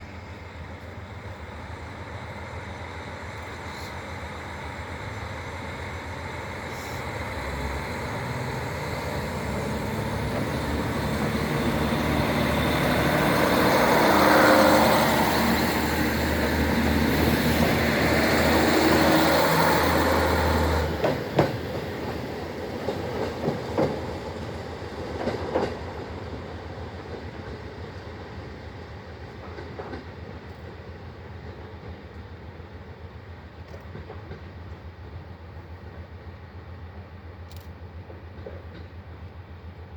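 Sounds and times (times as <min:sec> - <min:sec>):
diesel railcar engine throttling up: 0:00.0 - 0:39.9
train wheels clacking over rail joints: 0:17.6 - 0:26.2, 0:29.3 - 0:32.2, 0:37.5 - 0:39.4.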